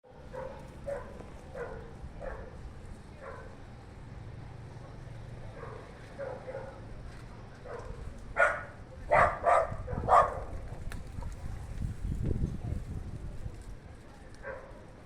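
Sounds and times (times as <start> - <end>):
dog barking: 0.2 - 2.6, 3.2 - 3.6, 5.6 - 6.8, 7.7 - 10.5, 14.4 - 14.8.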